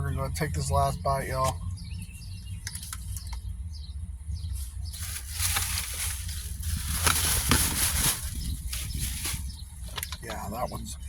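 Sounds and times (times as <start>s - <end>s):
steady low hum: 0.0s - 11.0s
rustling handling noise: 4.5s - 10.4s.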